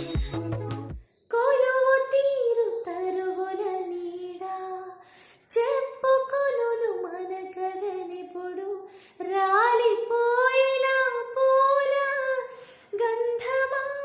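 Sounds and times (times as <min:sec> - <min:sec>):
electronic music intro: 0:00.0 - 0:01.0.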